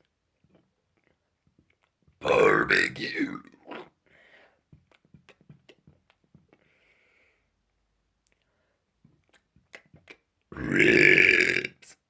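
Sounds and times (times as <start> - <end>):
soft breath: 4.0 - 4.7, 6.5 - 7.6.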